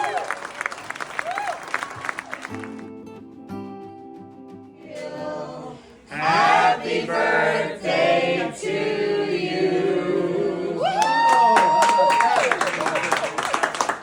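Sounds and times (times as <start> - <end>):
choir singing: 4.8 - 10.8.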